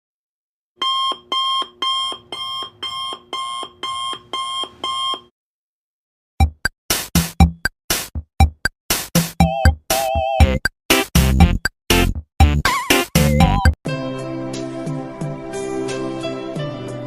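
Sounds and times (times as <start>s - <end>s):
electronic alarm beeping: 0.8s - 5.3s
electronic music with drum machine: 6.4s - 13.8s.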